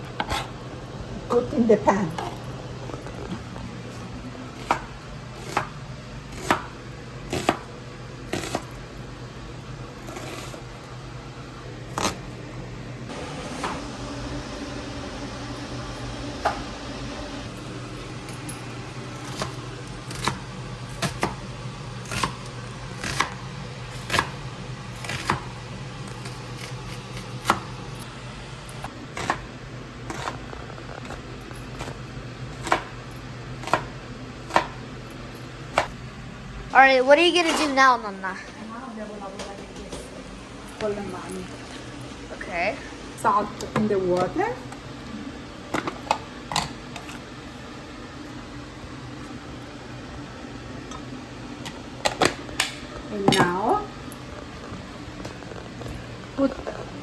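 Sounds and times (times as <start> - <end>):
steady low hum: 0.0 - 57.0
knife chopping on cutting board: 4.5 - 7.7, 19.2 - 21.4, 23.0 - 24.4, 25.0 - 25.5, 32.6 - 32.9, 33.6 - 34.8.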